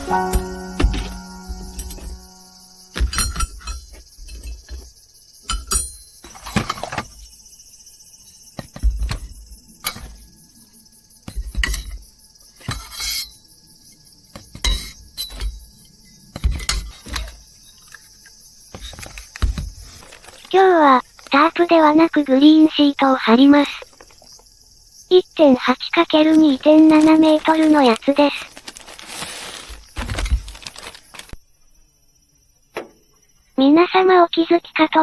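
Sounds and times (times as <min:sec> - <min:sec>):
dull thumps: 0:00.0 - 0:03.5
camping gear clinking: 0:00.0 - 0:07.2, 0:26.3 - 0:31.4
insect chorus: 0:00.0 - 0:35.0.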